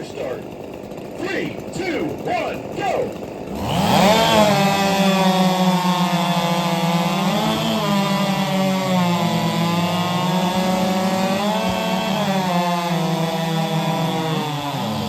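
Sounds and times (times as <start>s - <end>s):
chainsaws cutting logs: 0.0s - 15.0s.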